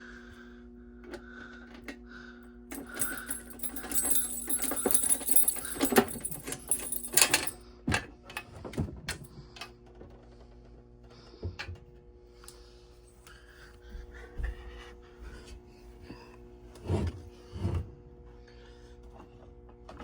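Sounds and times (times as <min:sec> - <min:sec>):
metal pieces jingling: 0:02.7 - 0:07.6.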